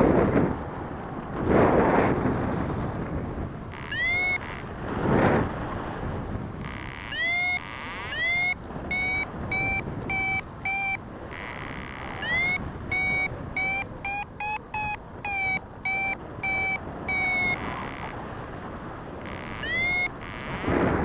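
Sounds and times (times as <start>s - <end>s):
variometer beeping: 3.7s - 4.8s, 6.6s - 18.2s, 19.2s - 20.8s.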